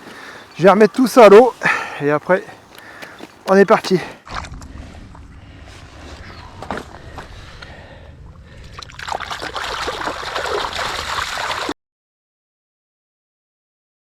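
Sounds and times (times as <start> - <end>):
water splashing and sloshing: 4.2 - 11.8.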